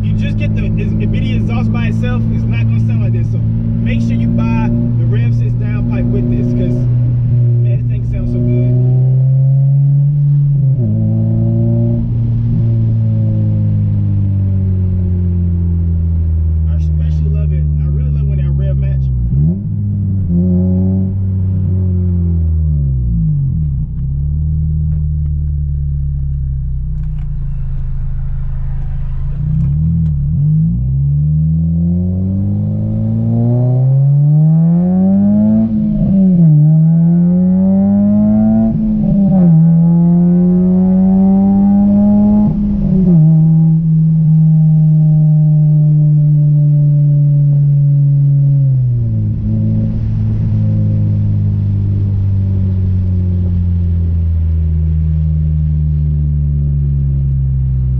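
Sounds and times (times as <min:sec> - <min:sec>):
car engine accelerating: 0:00.0 - 0:57.9.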